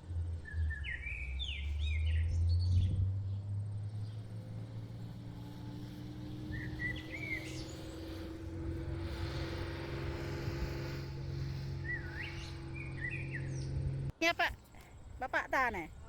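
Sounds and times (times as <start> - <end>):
small birds chirping: 0.3 - 16.0
steady low hum: 5.0 - 14.2.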